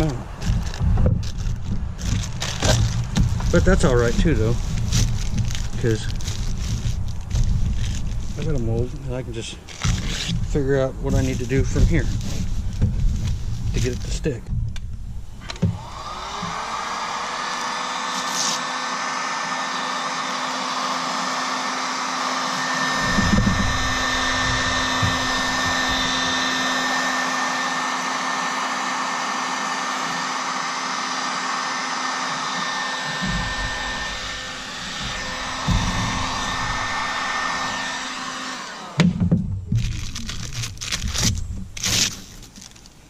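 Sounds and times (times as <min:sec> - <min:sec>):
handling bumps: 0:00.0 - 0:16.0, 0:23.0 - 0:26.6, 0:33.2 - 0:38.0
heat gun blowing: 0:00.0 - 0:43.0.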